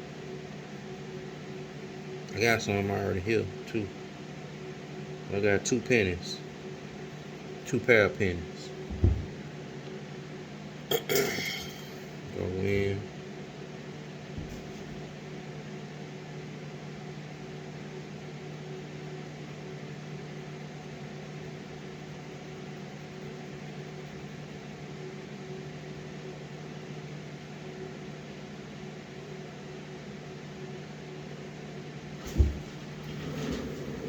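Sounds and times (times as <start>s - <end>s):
machine hum: 6.3s - 9.7s.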